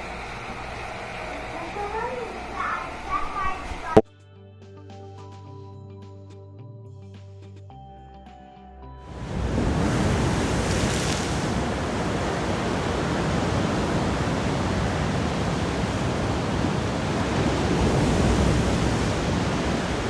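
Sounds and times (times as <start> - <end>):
washing machine water rushing: 0.0 - 4.0, 9.1 - 20.0.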